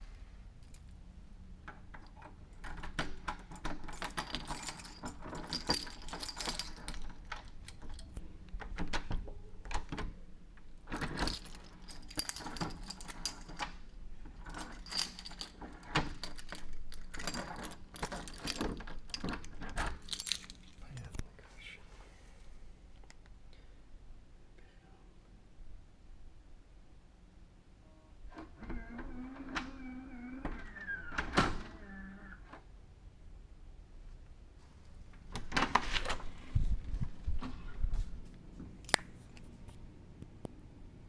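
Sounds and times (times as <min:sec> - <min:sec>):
metal keys jingling: 0:02.6 - 0:08.1, 0:11.0 - 0:13.7, 0:14.4 - 0:20.8.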